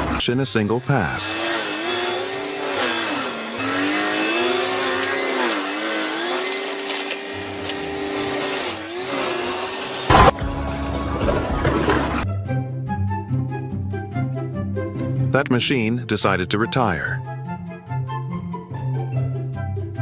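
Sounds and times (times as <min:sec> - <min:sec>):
machine motor whining: 0:00.0 - 0:10.4
loud thud: 0:10.1 - 0:10.4.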